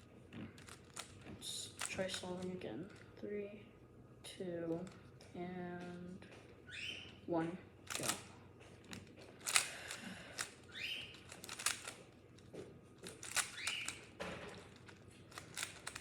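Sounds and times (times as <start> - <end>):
cube turns scraping: 0.0 - 3.2, 7.9 - 8.2, 8.9 - 12.2, 13.0 - 16.0
plastic puzzle cube clicking: 0.6 - 3.0, 7.9 - 8.2, 9.0 - 12.0, 13.0 - 16.0.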